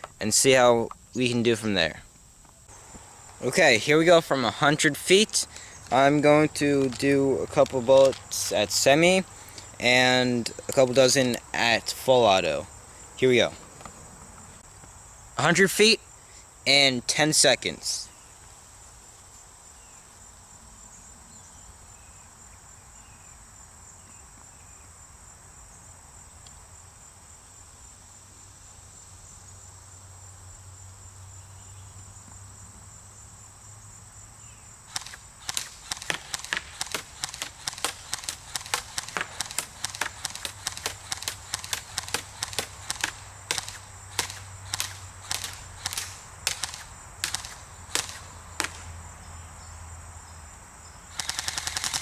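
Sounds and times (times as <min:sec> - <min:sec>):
crickets chirping: 0:00.0 - 0:52.0
airsoft rifle firing shots: 0:34.9 - 0:48.9, 0:51.1 - 0:52.0.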